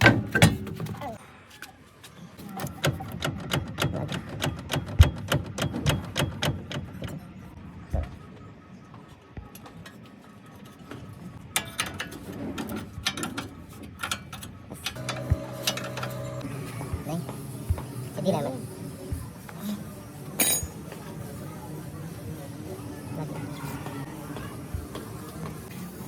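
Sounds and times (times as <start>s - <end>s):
rapid mechanical clicks and knocks: 2.7s - 7.2s.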